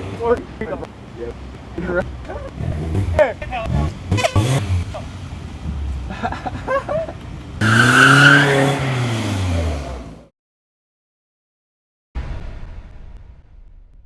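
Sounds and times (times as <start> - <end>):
car engine revving: 0.0 - 10.3
vehicle noise: 0.0 - 10.3.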